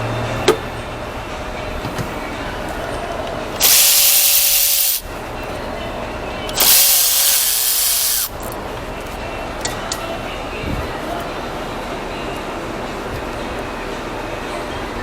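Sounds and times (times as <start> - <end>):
compressed air hissing bursts: 3.6 - 5.1, 6.5 - 8.6.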